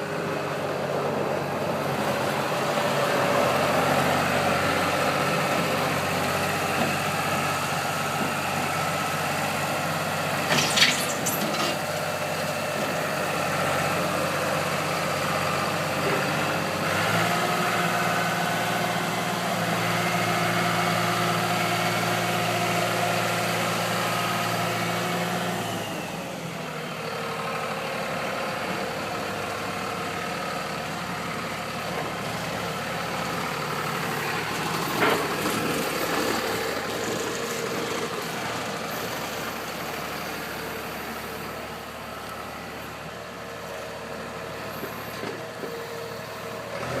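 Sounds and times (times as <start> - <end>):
diesel engine running: 0.0 - 47.0
sharp clatter: 10.5 - 11.9.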